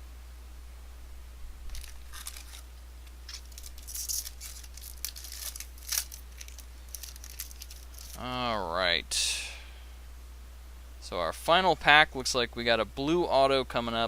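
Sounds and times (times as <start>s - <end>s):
steady low hum: 0.0s - 14.0s
foil wrapper tearing and crinkling: 1.7s - 8.2s.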